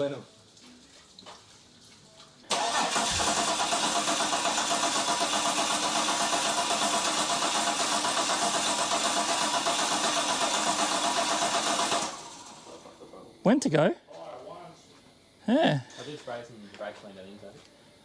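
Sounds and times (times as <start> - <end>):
engine cranking not catching: 2.5 - 12.5.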